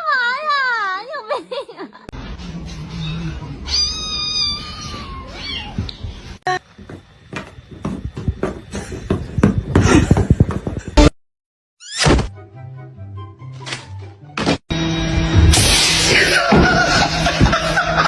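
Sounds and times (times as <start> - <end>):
cat meowing: 2.5 - 6.0
quick taps and rustling: 6.8 - 10.9.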